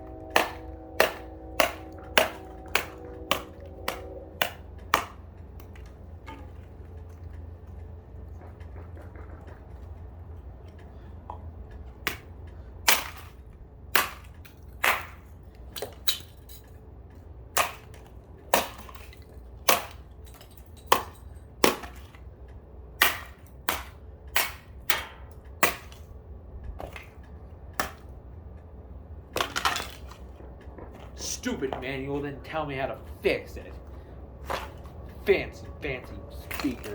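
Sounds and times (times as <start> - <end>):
alarm clock being struck hard: 0.0 - 5.3.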